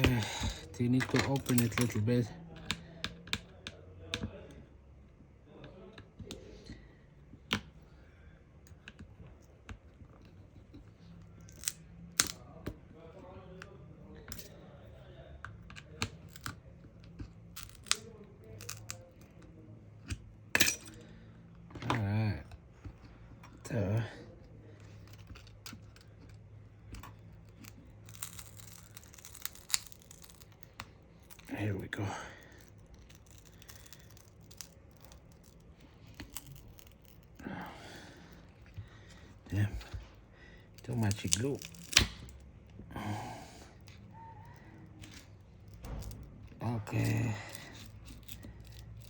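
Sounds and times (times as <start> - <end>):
faint steady hum: 0.0 - 49.0
adhesive crackling and tearing: 11.2 - 12.6, 15.9 - 19.6, 23.6 - 42.5, 43.8 - 49.0.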